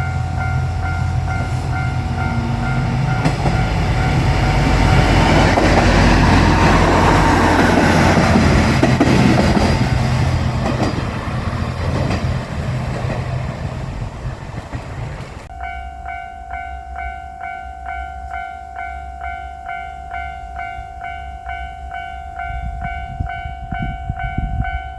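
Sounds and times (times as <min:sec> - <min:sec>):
level crossing warning bell: 0:00.0 - 0:08.9, 0:15.5 - 0:24.9
train engine and wheels rumbling: 0:00.0 - 0:24.9.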